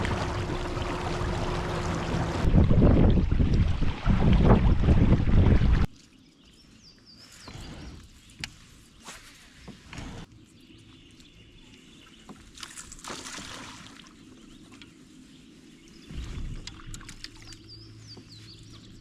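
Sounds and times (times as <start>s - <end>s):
water splashing around kayak: 0.0s - 6.1s, 11.7s - 19.0s
low thump and rumble: 16.0s - 16.9s.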